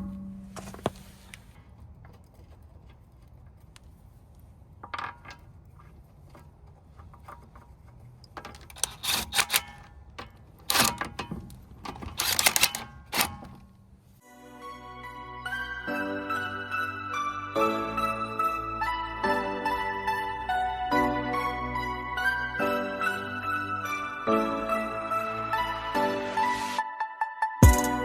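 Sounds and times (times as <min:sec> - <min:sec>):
metal clinking of lug bolts: 0:08.2 - 0:13.8
wrench rapid clicking: 0:08.6 - 0:09.9, 0:10.7 - 0:11.1, 0:12.1 - 0:13.4.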